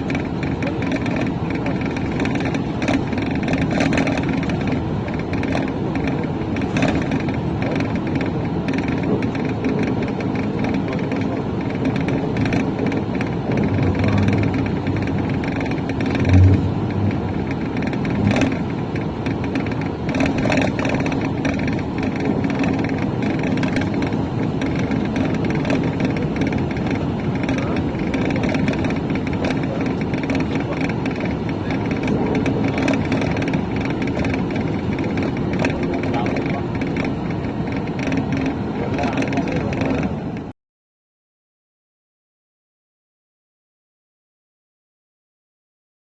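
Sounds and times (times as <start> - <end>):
road rush: 0.0 - 40.5
vehicle engine hum: 0.0 - 40.5
short knocks: 12.0 - 24.0.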